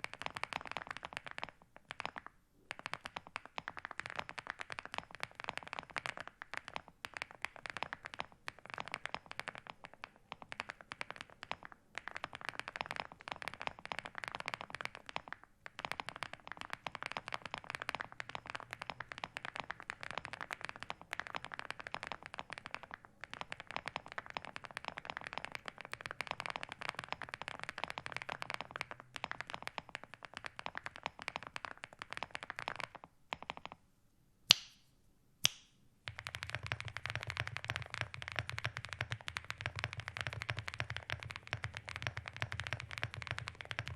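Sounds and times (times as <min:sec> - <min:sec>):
mechanical keyboard typing: 0:00.0 - 0:33.8, 0:36.1 - 0:43.9.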